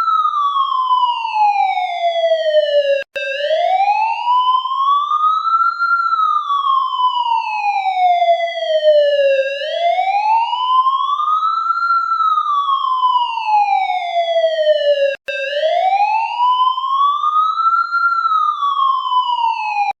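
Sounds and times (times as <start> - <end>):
police siren wailing: 0.0 - 20.0.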